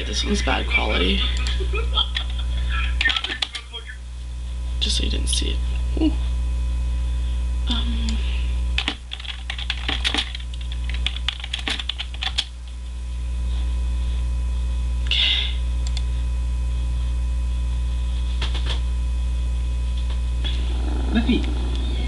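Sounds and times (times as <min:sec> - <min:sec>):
steady low hum: 0:00.0 - 0:22.0
rapid clicking: 0:08.8 - 0:12.5.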